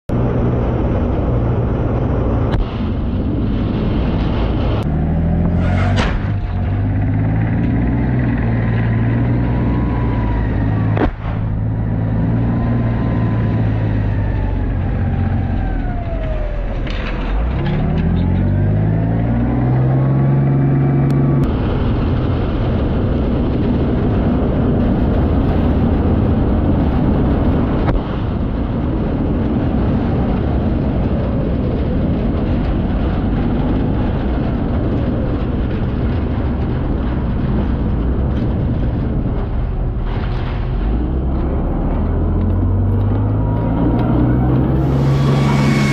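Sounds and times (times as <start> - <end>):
engine running loudly: 0.1 - 45.9.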